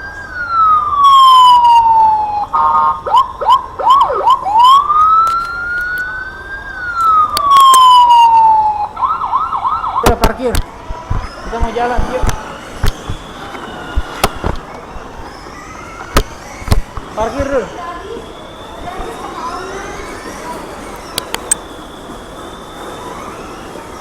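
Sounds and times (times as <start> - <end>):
electronic siren wailing and yelping: 0.0 - 24.0
sharp clicks: 10.0 - 17.5, 20.9 - 21.6.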